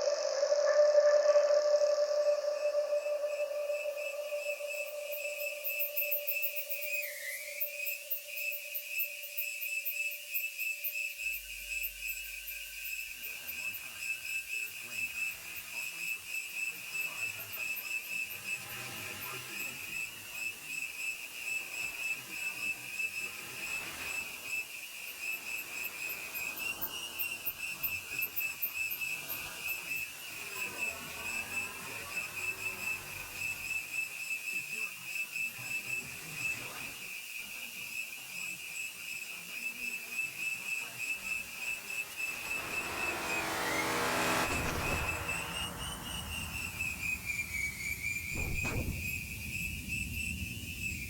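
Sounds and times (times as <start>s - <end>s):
swooping tones: 0.0s - 9.3s
low held tones: 0.0s - 9.4s
high pulsing whistling tone: 0.0s - 13.7s, 40.2s - 51.0s.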